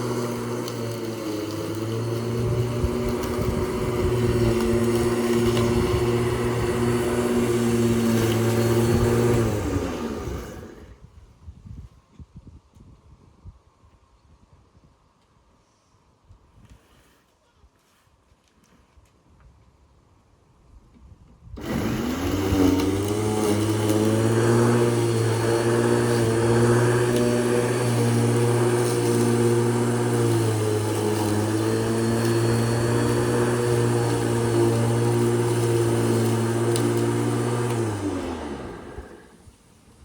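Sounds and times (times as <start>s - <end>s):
lawn mower running: 0.0s - 11.0s, 21.6s - 40.0s.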